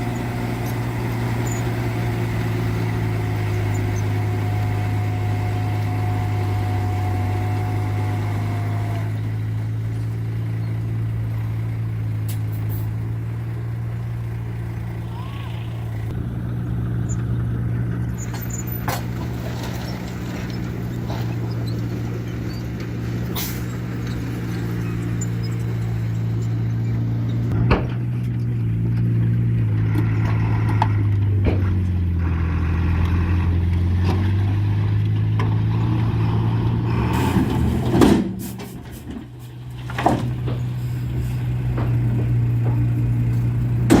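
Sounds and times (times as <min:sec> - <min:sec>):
heavy diesel engine running: 0:00.0 - 0:44.0
sharp knocks and clanks: 0:37.3 - 0:44.0.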